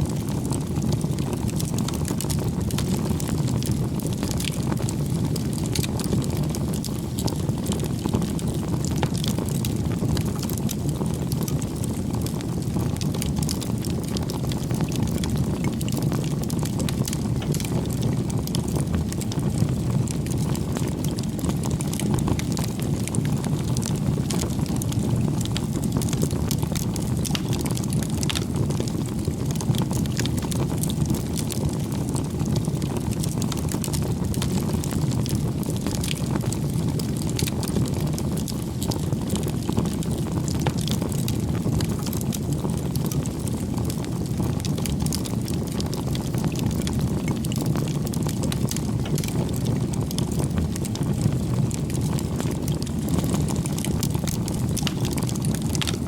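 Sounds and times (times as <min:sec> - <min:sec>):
burning wood crackling: 0:00.0 - 0:56.0
low rushing of fire: 0:00.0 - 0:56.0.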